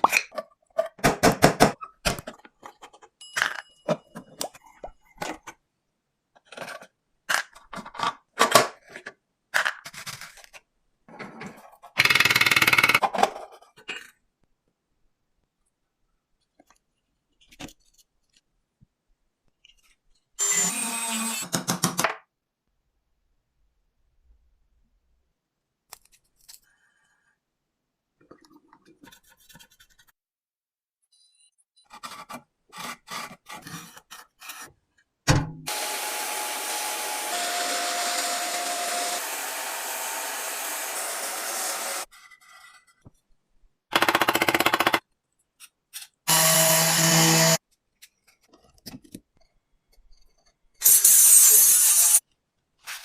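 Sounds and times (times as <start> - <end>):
electric power tool whining: 35.7 - 42.1.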